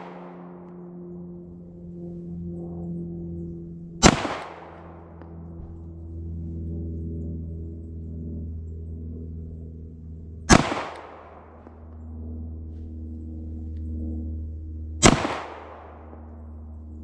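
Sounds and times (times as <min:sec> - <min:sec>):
low hum: 0:00.0 - 0:17.0
pistol shots: 0:04.0 - 0:05.0, 0:10.5 - 0:11.6, 0:15.0 - 0:16.1.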